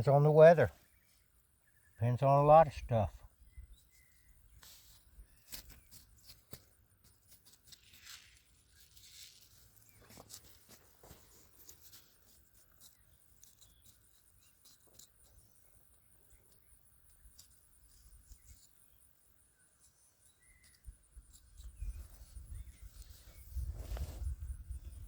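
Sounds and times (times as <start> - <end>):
faint scrapes in garden soil: 3.7 - 15.7, 19.9 - 25.0.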